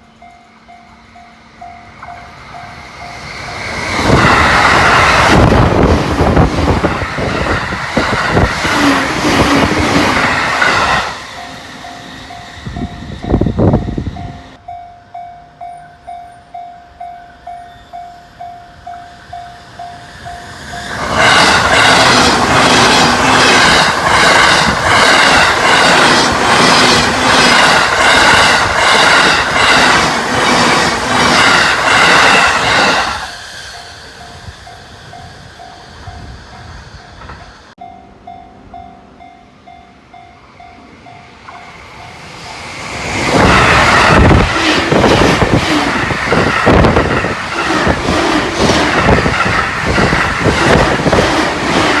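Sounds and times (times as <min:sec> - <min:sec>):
level-crossing warning bell: 0:00.0 - 0:06.5, 0:10.3 - 0:52.0
train passing at speed: 0:00.0 - 0:52.0
train wheels clattering over rail: 0:20.4 - 0:33.7, 0:41.4 - 0:52.0.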